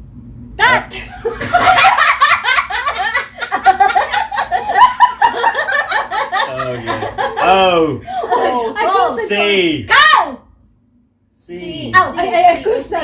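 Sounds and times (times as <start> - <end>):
people laughing loudly: 1.2 - 9.0.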